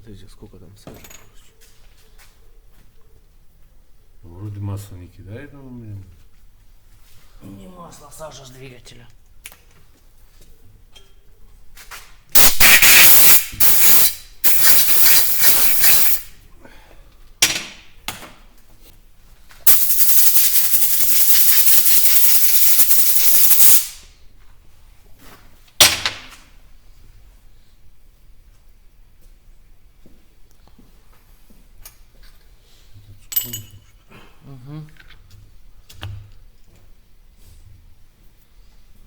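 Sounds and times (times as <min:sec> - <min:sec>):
compressed air hissing bursts: 0:12.3 - 0:16.3, 0:19.7 - 0:24.1.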